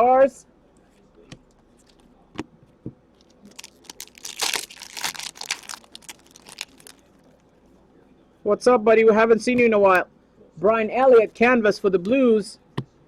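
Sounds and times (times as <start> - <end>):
wrappers crinkling and tearing: 3.2 - 7.4.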